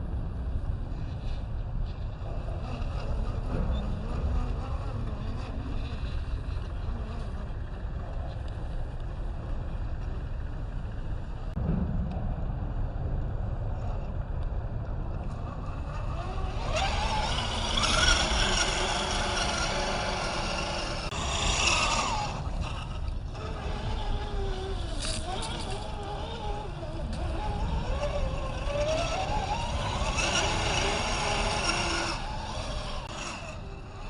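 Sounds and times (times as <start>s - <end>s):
low rumble: 0.0s - 34.0s
electric motor whining: 15.3s - 34.0s.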